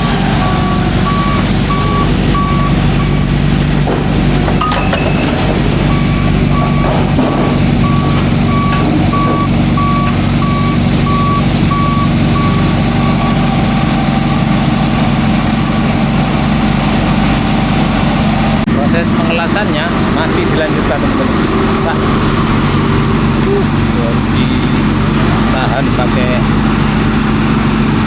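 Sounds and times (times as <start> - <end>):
reversing alarm beeping: 0.0 - 3.3, 4.6 - 15.1
construction vehicle engine running: 0.0 - 28.0.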